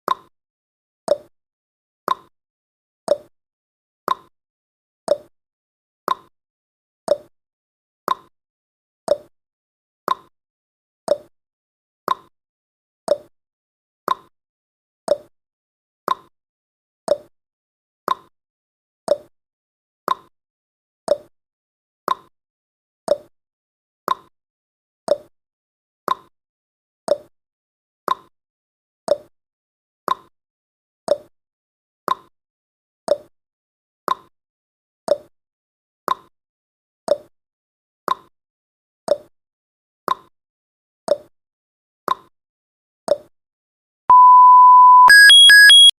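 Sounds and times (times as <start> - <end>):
timer ticking: 44.1 - 45.9.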